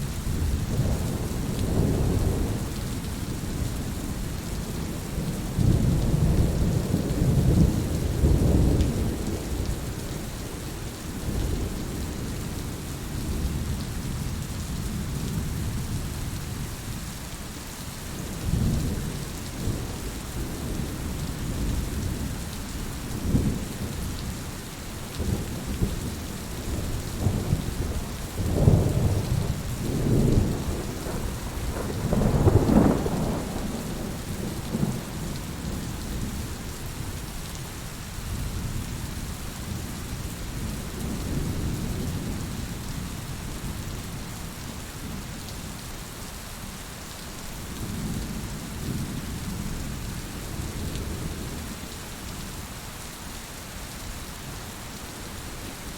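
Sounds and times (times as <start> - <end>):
heavy rain: 0.0 - 55.9
thunder rumbling: 25.2 - 36.6.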